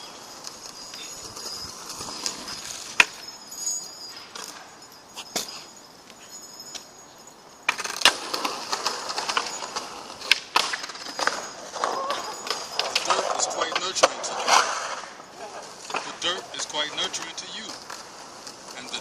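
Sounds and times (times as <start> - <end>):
faint high chirping: 0.0 - 7.6.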